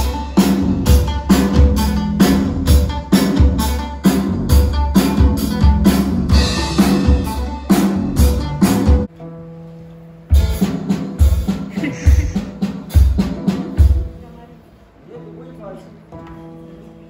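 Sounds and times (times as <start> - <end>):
drum kit beat: 0.0 - 9.1, 10.3 - 14.4
guitar: 0.0 - 14.3
bass: 0.0 - 14.5.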